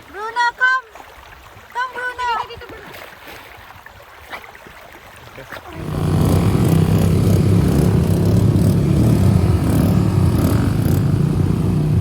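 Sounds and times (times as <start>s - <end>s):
engine running loud: 5.8s - 12.0s.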